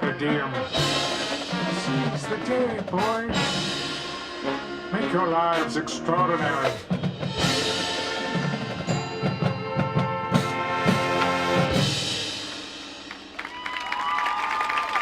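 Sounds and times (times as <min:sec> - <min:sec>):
marching band brass and drums: 0:00.0 - 0:14.2
crowd cheering and clapping: 0:12.5 - 0:15.0.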